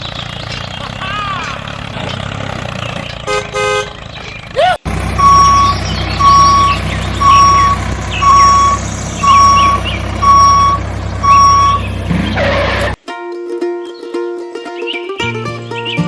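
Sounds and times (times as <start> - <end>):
reversing alarm beeping: 4.9 - 12.9
engine drone: 4.9 - 13.0
small chirps: 5.2 - 16.0.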